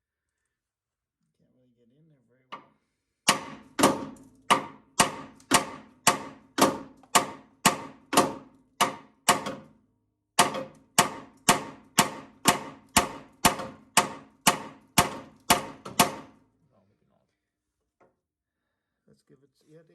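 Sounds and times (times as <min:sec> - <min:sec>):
hammer striking steel pin: 0:03.3 - 0:09.8, 0:10.4 - 0:16.4.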